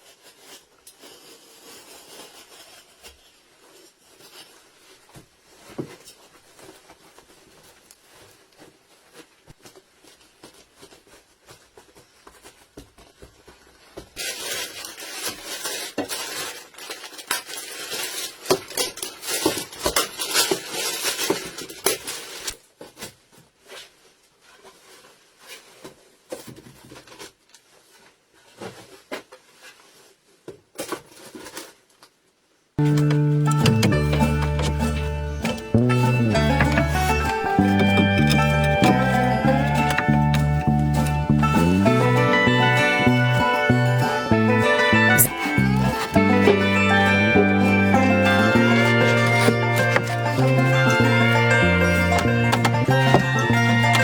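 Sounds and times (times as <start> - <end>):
dishes and pots clinking: 32.8 - 54.0.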